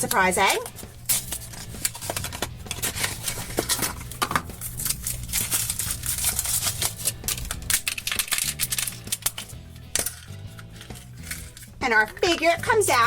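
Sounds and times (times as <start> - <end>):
foil wrapper crinkling: 0.0 - 12.4.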